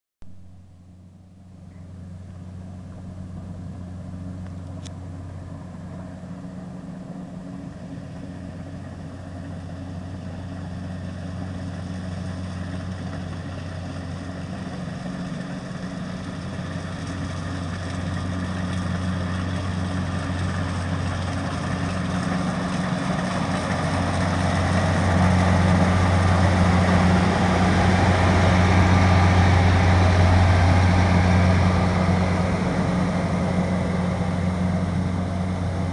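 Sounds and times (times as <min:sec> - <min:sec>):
combine harvester engine running: 0:00.2 - 0:35.9
machinery whir: 0:10.1 - 0:35.9.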